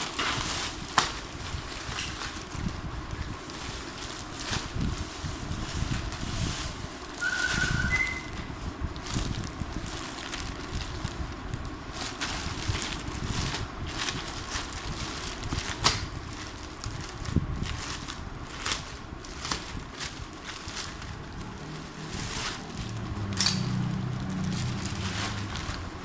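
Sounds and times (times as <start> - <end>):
plastic packaging rustling: 0.0 - 26.0
low rumble: 19.7 - 26.0.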